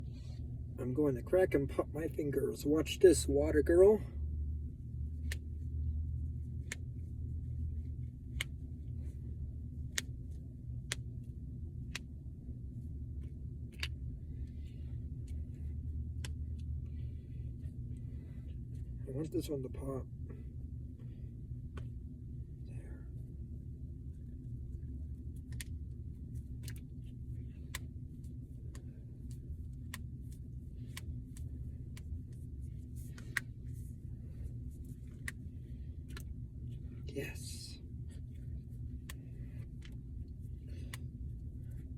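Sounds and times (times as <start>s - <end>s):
steady low hum: 0.0s - 41.9s
knuckles cracking: 5.1s - 5.6s, 6.5s - 7.0s, 7.9s - 9.1s, 9.7s - 12.2s, 13.2s - 17.1s, 24.9s - 36.4s, 38.1s - 41.9s.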